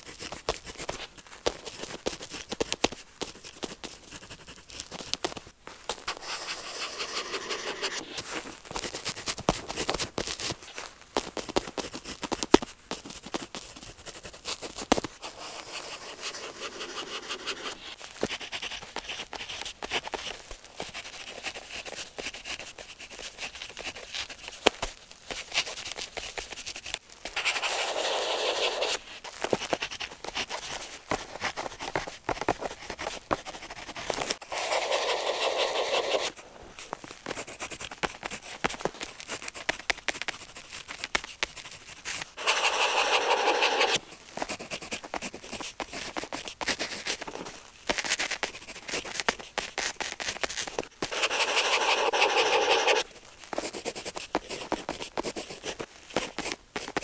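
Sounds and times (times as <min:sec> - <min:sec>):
pen scratching on paper: 0:00.1 - 0:05.2, 0:06.1 - 0:08.2, 0:13.7 - 0:20.3, 0:25.8 - 0:29.0, 0:29.6 - 0:36.4, 0:37.3 - 0:38.7, 0:39.3 - 0:47.2, 0:48.1 - 0:57.0.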